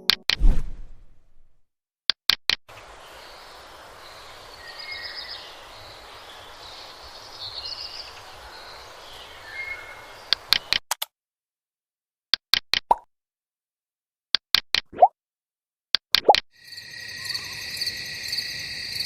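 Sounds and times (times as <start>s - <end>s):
sharp pops or clicks: 2.1s - 2.6s, 10.3s - 11.1s, 12.3s - 13.1s, 14.4s - 15.1s, 16.0s - 16.5s
birds chirping: 2.7s - 10.8s.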